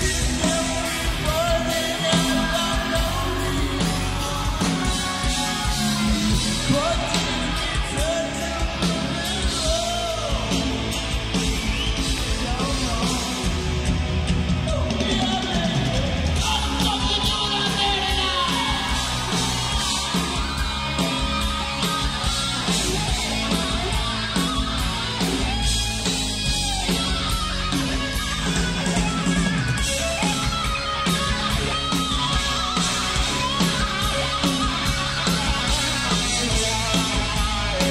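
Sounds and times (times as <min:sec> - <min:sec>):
live hard rock band: 0:00.0 - 0:37.9
singer wailing: 0:14.7 - 0:37.9.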